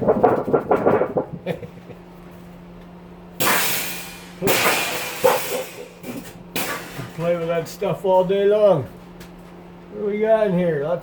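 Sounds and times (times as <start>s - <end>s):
harsh sheet metal noise: 0.0s - 1.7s, 3.4s - 7.2s
stove fan humming: 0.0s - 11.0s.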